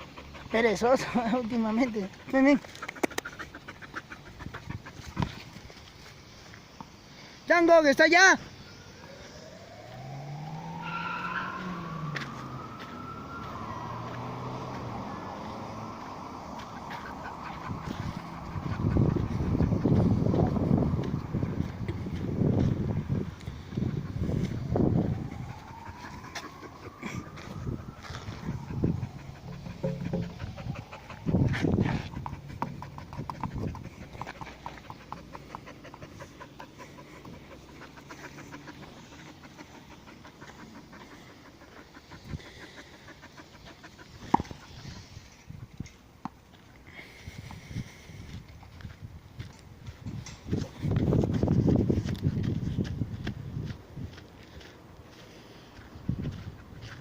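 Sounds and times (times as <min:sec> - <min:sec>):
dog panting: 0:00.0 - 0:05.9, 0:16.5 - 0:22.0, 0:25.3 - 0:45.8
vehicle whine: 0:00.0 - 0:07.4, 0:08.4 - 0:57.0
low engine hum: 0:09.0 - 0:57.0.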